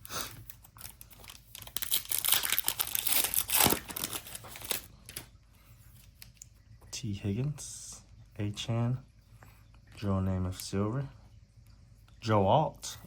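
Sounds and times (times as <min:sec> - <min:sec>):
foil wrapper tearing and crinkling: 0:00.0 - 0:05.3.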